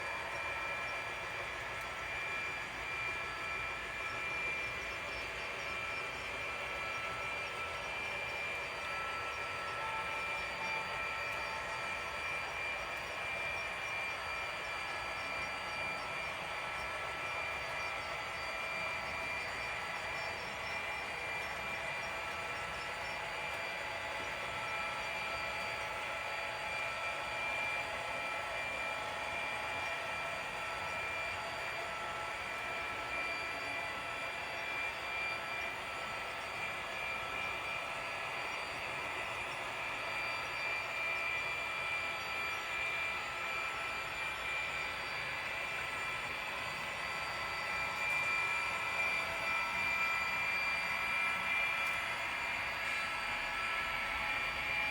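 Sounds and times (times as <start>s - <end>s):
model train whine and running noise: 0.0s - 54.9s.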